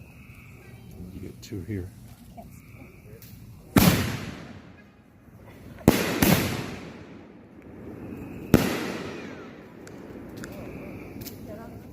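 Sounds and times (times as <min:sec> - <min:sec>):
firework shell booms with echo: 0:03.7 - 0:04.8, 0:05.8 - 0:11.5.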